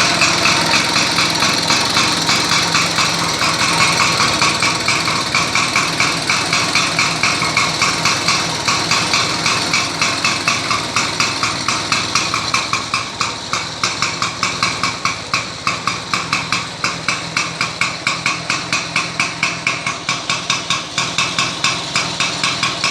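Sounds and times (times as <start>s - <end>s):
lawn mower engine running: 0.0s - 22.9s.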